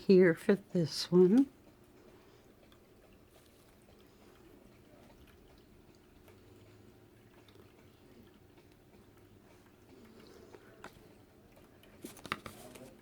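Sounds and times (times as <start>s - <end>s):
faint room hum: 0.0s - 13.0s
soft ticks: 1.2s - 6.4s.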